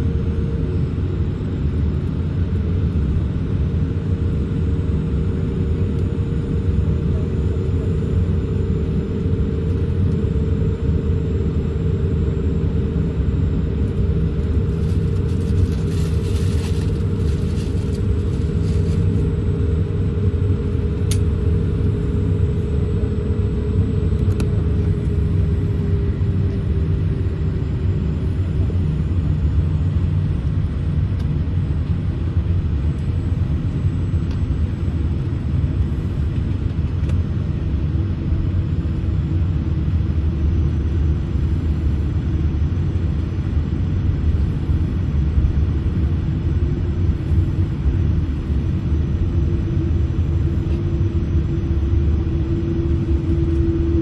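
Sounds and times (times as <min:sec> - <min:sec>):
aircraft cabin rumble: 0:00.0 - 0:54.0.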